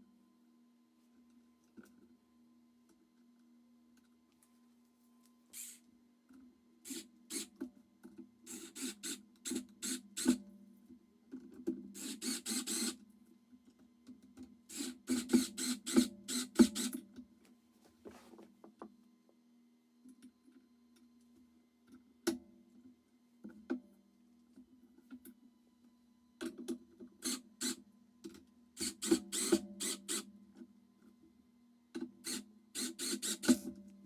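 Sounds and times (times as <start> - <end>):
power drill driving screws: 5.6 - 5.8, 6.9 - 7.5, 8.5 - 10.4, 12.0 - 13.0, 14.7 - 17.0, 27.2 - 27.8, 28.8 - 30.3, 32.2 - 33.6.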